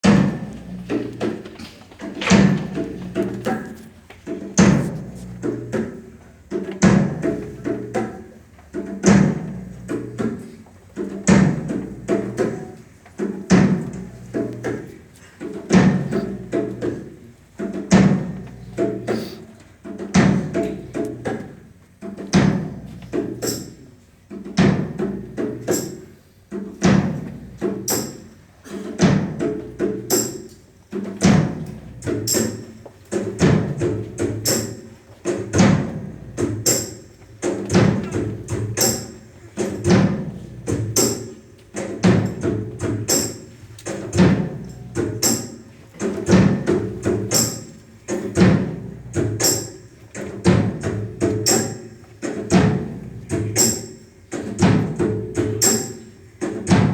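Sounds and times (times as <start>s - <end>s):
music with percussive beat: 0.0s - 56.9s.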